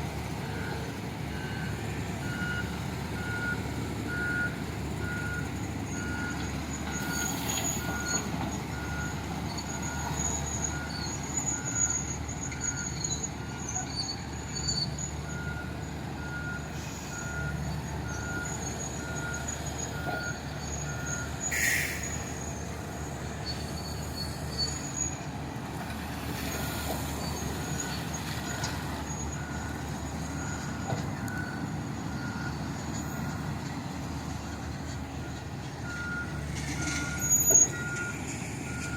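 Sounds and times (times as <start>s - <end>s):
heavy diesel machinery running: 0.0s - 38.9s
reversing alarm beeping: 0.4s - 25.2s, 26.6s - 33.5s, 34.5s - 38.9s
short loud hiss: 21.5s - 22.4s.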